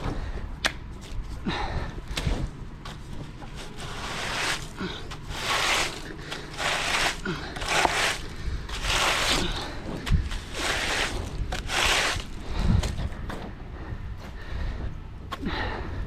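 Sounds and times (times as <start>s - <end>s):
hand tool scraping rough surface: 2.9s - 13.2s.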